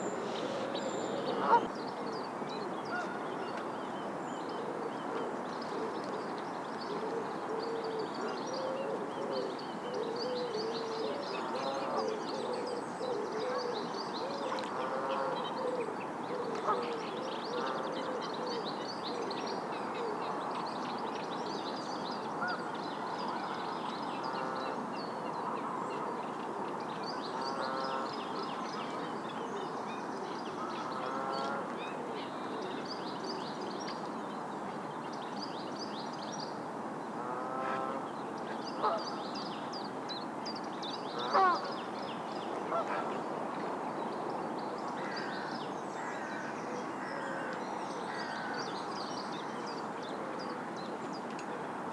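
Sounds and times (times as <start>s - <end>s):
steady background hiss: 0.0s - 4.4s.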